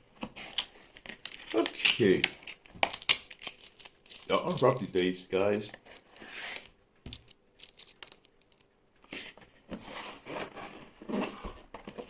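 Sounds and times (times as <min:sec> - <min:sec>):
packaging rustling and crinkling: 0:00.2 - 0:05.0, 0:05.9 - 0:08.8.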